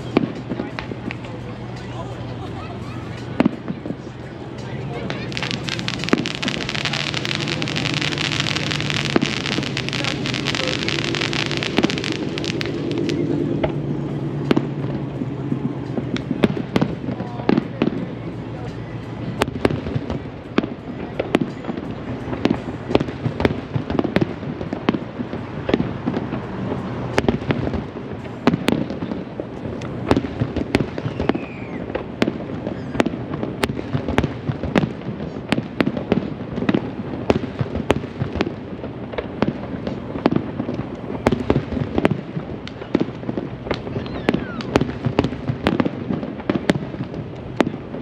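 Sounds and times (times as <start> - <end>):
fireworks bursting: 0.0 - 48.0
low rumble: 5.1 - 20.5.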